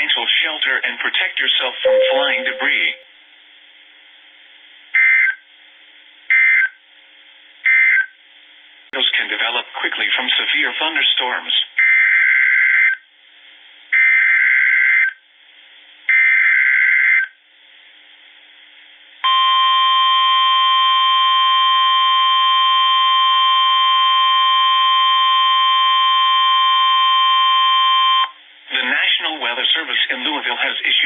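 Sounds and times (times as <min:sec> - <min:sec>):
long steady alert tone: 0:01.8 - 0:03.0.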